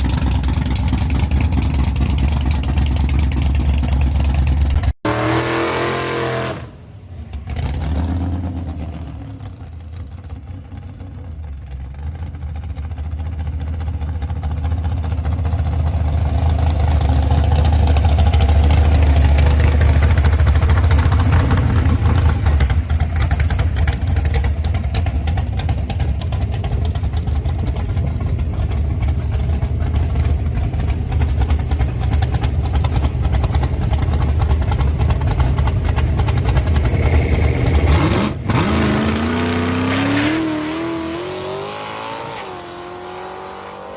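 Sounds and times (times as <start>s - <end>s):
hot rod engine rumbling: 0.0s - 43.6s.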